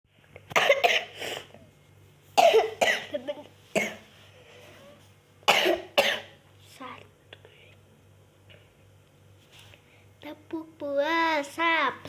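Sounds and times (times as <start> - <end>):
person coughing: 0.6 - 1.6, 2.4 - 4.0, 5.5 - 6.4.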